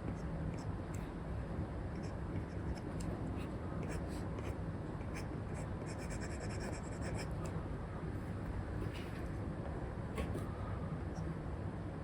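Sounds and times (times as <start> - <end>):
steady white-noise hiss: 0.0 - 12.0.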